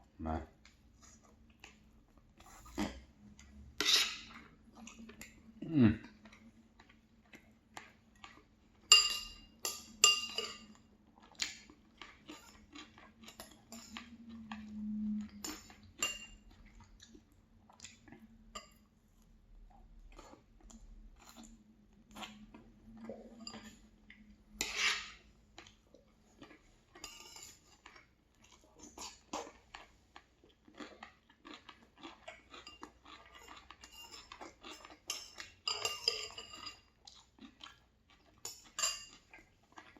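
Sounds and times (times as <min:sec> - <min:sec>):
chewing: 0:00.6 - 0:08.9, 0:10.4 - 0:39.9
cutlery scraping on a plate: 0:03.8 - 0:04.4, 0:08.9 - 0:10.7, 0:13.3 - 0:14.1, 0:15.2 - 0:16.4, 0:23.4 - 0:23.8, 0:24.6 - 0:25.2, 0:27.0 - 0:27.9, 0:32.6 - 0:36.9, 0:38.4 - 0:39.2.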